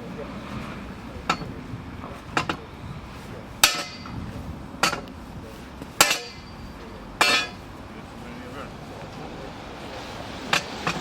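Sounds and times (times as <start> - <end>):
hammer striking steel rod: 3.6 - 4.1, 6.0 - 6.6, 7.2 - 7.6.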